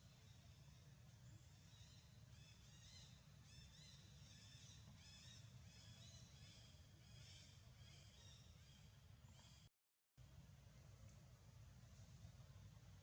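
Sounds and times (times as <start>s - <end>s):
small birds chirping: 0.0s - 9.7s
low steady hum: 0.0s - 13.0s.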